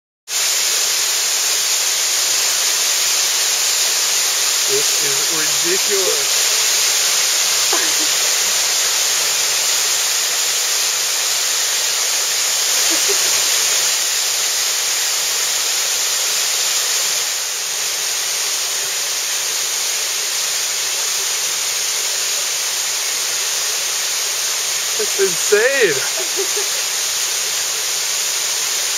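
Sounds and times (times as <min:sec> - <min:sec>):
waterfall pouring into a pool: 0:00.3 - 0:28.9.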